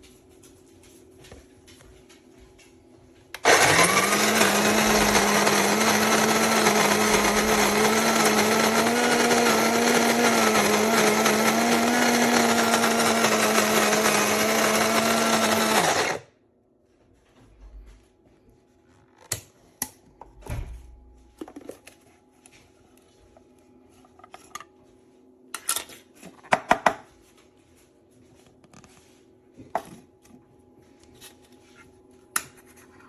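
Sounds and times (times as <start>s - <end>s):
coffee grinder whirring: 3.4s - 16.3s.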